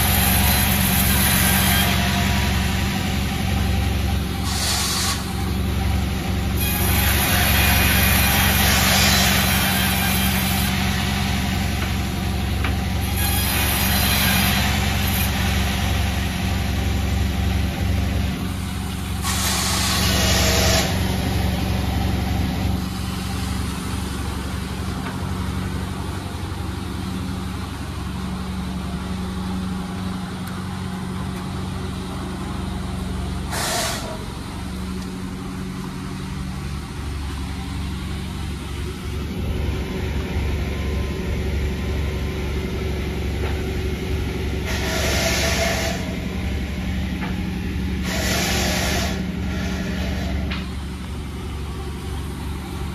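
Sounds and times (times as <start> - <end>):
large engine humming: 0.0 - 52.9
short hisses: 33.5 - 34.2.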